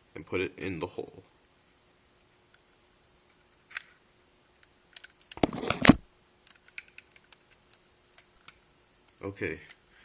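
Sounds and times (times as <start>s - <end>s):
small metal parts clicking: 4.6s - 5.4s, 6.4s - 8.6s.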